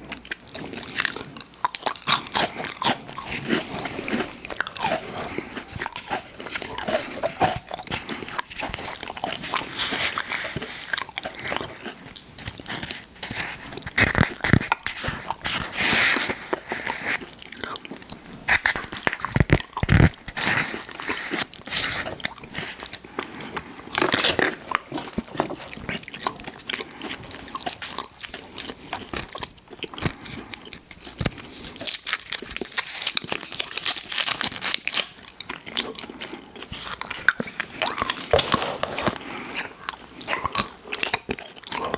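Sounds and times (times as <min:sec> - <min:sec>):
chewing and crunching sweets: 0:00.0 - 0:41.9.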